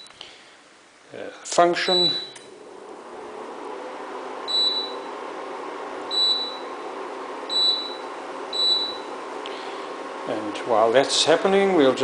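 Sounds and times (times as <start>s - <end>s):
induction cooker fan humming: 0.0s - 12.0s.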